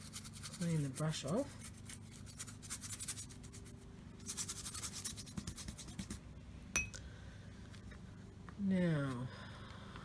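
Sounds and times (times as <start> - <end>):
paintbrush bristles scrubbing: 0.0 - 3.7.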